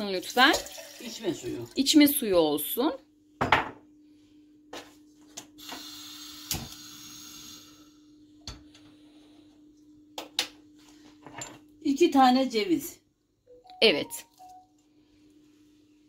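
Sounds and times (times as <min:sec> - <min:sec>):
kitchenware knocking and clinking: 0:03.4 - 0:03.8, 0:11.2 - 0:11.6.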